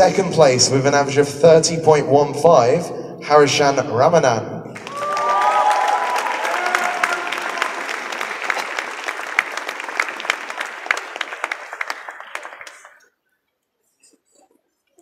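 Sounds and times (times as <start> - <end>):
audience applauding: 4.8 - 13.1.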